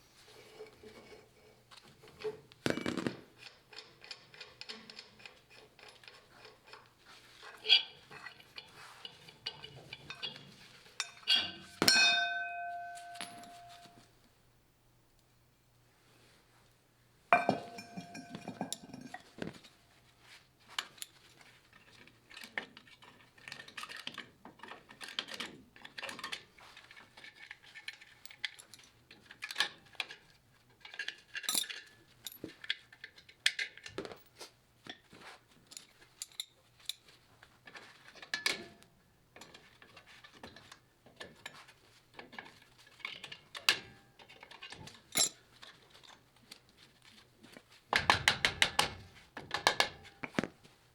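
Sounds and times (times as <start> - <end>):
metal tools clinking: 9.2 - 14.1, 17.4 - 19.5.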